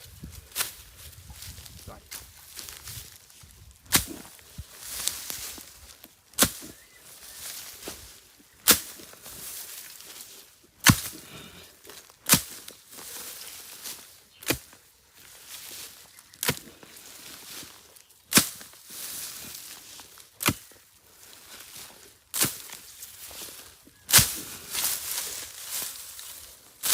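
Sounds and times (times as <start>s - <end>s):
earth scraping and rustling: 0.0s - 26.9s
hoe chopping into soil: 3.8s - 4.4s, 6.3s - 6.8s, 8.6s - 9.1s, 10.8s - 11.2s, 12.3s - 12.7s, 14.4s - 14.8s, 16.4s - 16.7s, 18.3s - 18.7s, 20.4s - 20.7s, 22.3s - 22.8s, 24.1s - 25.2s.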